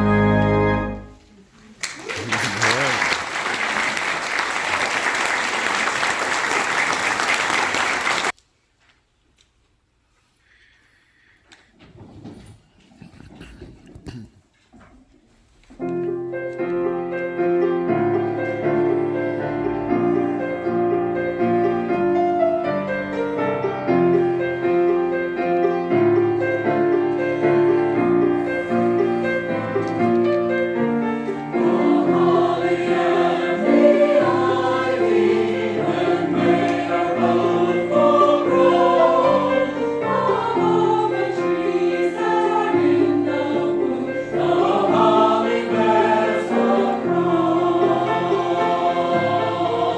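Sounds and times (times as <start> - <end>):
choir singing in harmony: 0.0 - 1.1, 17.2 - 49.9.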